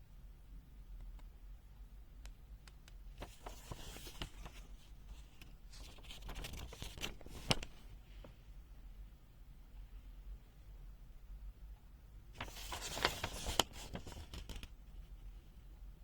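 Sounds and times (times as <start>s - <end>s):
rustling: 12.4s - 14.7s.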